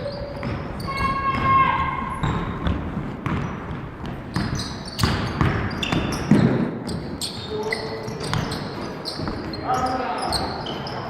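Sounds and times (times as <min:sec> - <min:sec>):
basketball bouncing on court: 0:00.0 - 0:07.5
sneaker squeaks: 0:00.0 - 0:11.0.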